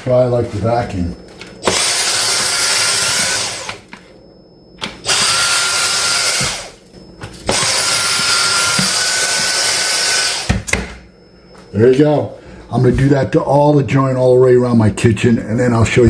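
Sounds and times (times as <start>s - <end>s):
vacuum cleaner running: 0.0s - 4.2s, 4.8s - 13.0s.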